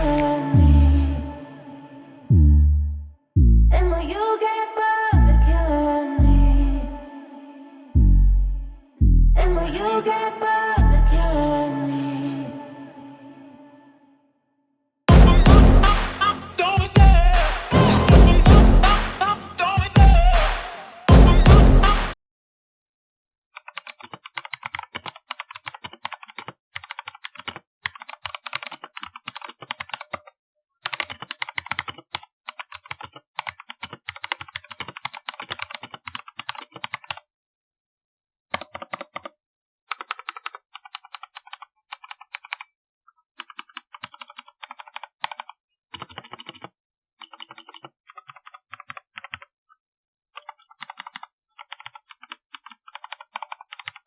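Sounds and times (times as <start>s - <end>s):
mechanical keyboard key clicks: 23.6s - 30.2s, 30.9s - 37.2s, 38.6s - 39.3s, 39.9s - 42.7s, 43.4s - 49.5s, 50.4s - 54.0s.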